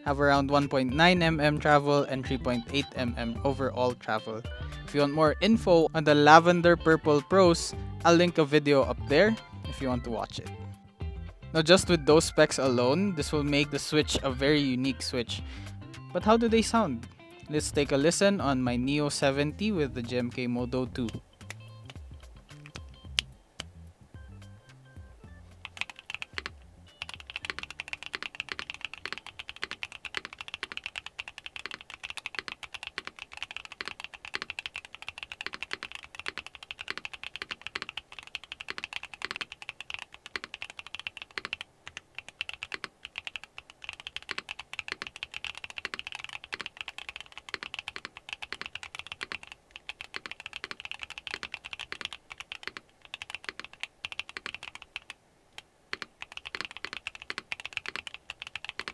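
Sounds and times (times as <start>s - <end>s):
clacky mechanical keyboard typing: 25.6s - 55.1s, 55.9s - 58.9s.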